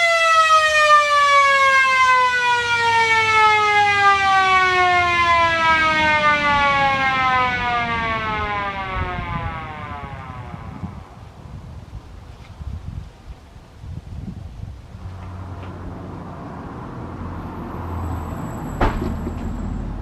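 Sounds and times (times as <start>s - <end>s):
fire siren winding down: 0.0s - 11.3s.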